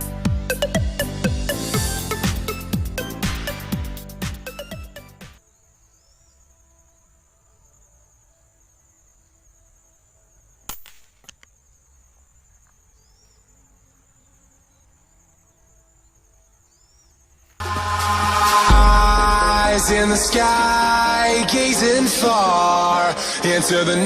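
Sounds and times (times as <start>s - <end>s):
faint bird chirps: 4.5s - 7.1s, 11.4s - 17.6s
insects chirring: 4.5s - 24.0s
small click: 10.7s - 11.6s.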